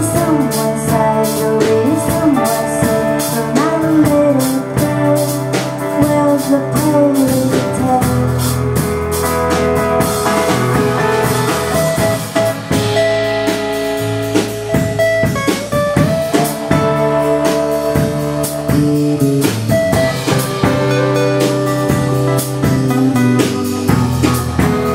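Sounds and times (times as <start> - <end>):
drum kit: 0.0 - 24.9
guitar: 0.0 - 24.9.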